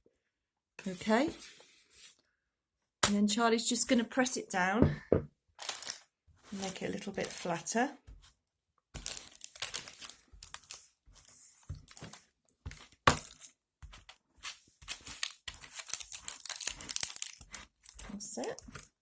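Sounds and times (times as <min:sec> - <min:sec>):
mixture crackling and scraping in pan: 0:05.8 - 0:08.4, 0:09.0 - 0:19.0.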